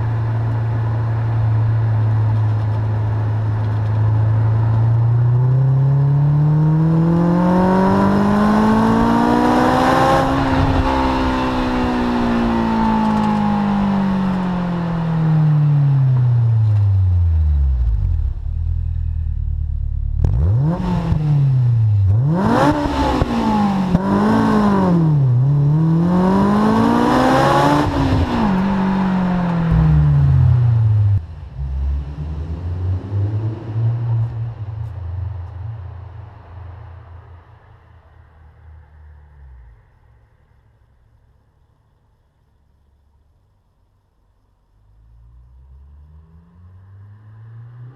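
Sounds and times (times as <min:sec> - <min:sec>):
car engine revving: 0:04.7 - 0:34.8.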